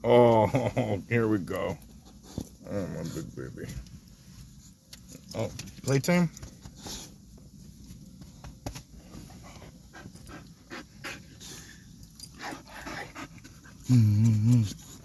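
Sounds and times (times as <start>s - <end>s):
dog panting: 9.3s - 13.9s
dog low vocal sound: 12.5s - 15.0s.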